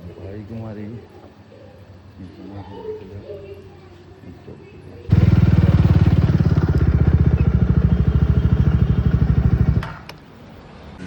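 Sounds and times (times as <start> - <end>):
motorcycle engine throbbing: 5.1 - 9.9.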